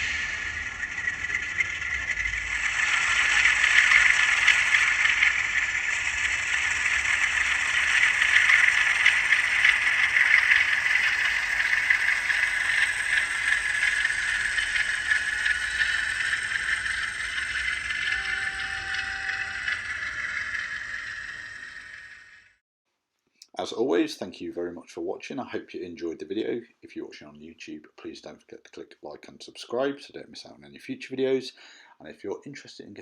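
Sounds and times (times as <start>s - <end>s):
diesel engine sound from small speaker: 0.0s - 22.6s
model train rattling on track: 0.0s - 22.6s.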